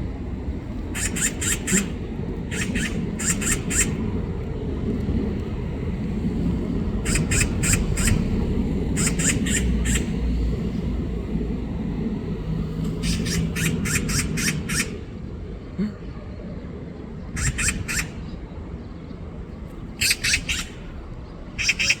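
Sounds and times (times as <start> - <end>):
magpie harsh rattling chatter: 1.0 - 4.1, 7.0 - 8.3, 9.0 - 10.1, 13.0 - 15.0, 17.4 - 18.2, 20.0 - 20.9, 21.6 - 22.0.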